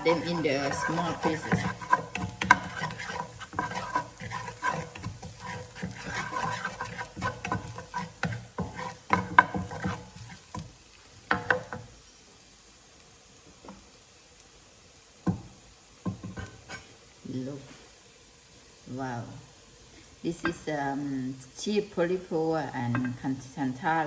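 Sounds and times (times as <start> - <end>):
spatula knocking on pan: 0.0 - 10.7, 11.3 - 11.8, 15.3 - 16.5
spatula scraping a pan: 0.0 - 10.7, 16.2 - 17.0
garlic frying in oil: 0.0 - 24.0.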